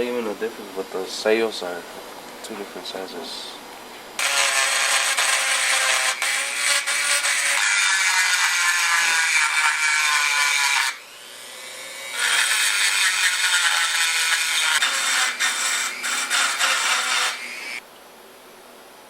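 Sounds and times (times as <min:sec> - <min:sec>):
power grinder grinding metal: 0:04.2 - 0:17.8.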